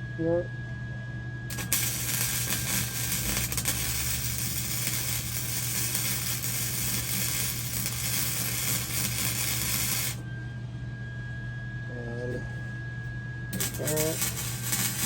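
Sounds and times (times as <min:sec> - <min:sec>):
low steady hum: 0:00.0 - 0:15.0
welding arc crackling sizzle: 0:01.5 - 0:10.2, 0:13.6 - 0:15.0.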